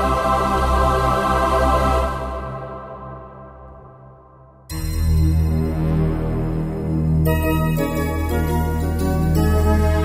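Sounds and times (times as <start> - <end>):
synthesizer chords with deep bass: 2.2 - 10.0.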